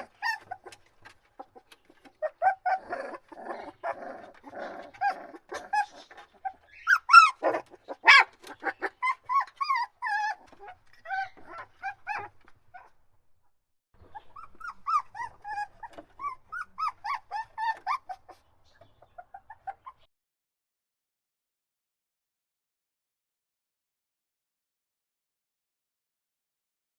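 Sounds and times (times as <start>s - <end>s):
puppy whimpering and yelping: 0.0s - 13.0s, 14.0s - 20.1s.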